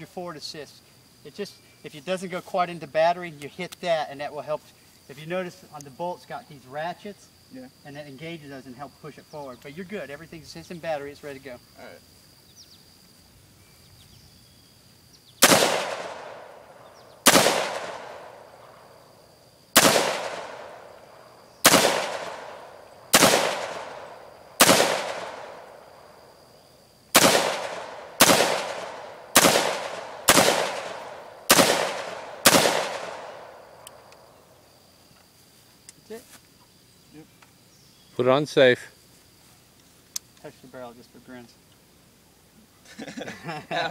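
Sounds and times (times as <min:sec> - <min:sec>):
rifle shots echoing: 0:15.4 - 0:18.9, 0:19.8 - 0:26.2, 0:27.1 - 0:33.9.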